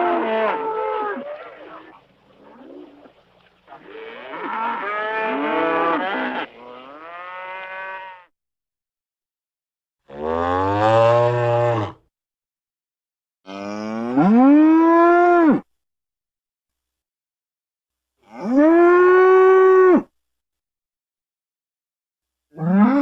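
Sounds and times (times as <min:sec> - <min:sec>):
cow mooing: 0:03.8 - 0:08.3, 0:10.1 - 0:12.0, 0:13.5 - 0:15.6, 0:22.5 - 0:23.0.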